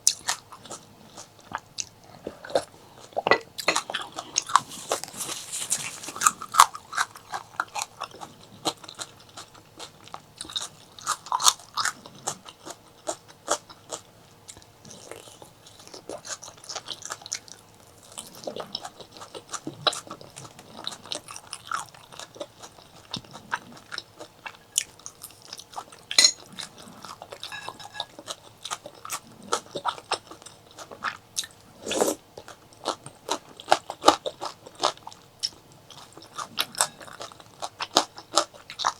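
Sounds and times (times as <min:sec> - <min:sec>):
person chewing and biting food: 0:00.1 - 0:14.0.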